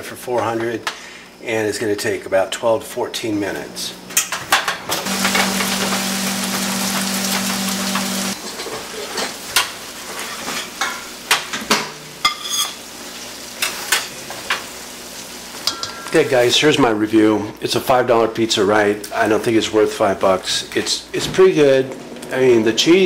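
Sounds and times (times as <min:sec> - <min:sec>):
low hum: 0:05.1 - 0:08.4.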